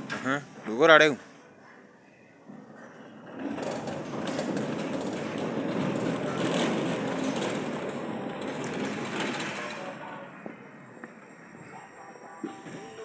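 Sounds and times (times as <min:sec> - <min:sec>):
metal sliding gate rumbling: 0:02.9 - 0:10.4
wheels clicking on rail: 0:03.0 - 0:11.4.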